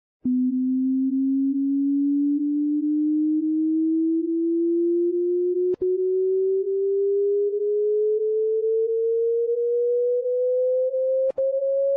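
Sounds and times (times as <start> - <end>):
rising sine tone: 0.2 - 11.9
click: 11.2 - 11.5.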